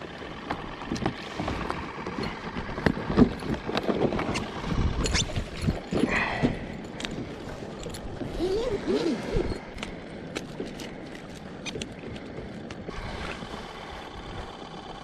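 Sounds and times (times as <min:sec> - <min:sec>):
faint motorboat engine hum: 0:00.0 - 0:15.0
wind on microphone: 0:08.1 - 0:09.6.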